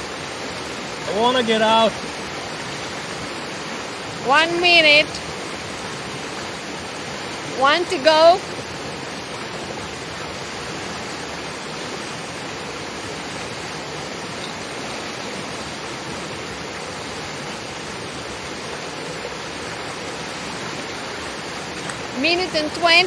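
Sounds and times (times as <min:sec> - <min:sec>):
river water rushing: 0:00.0 - 0:23.0.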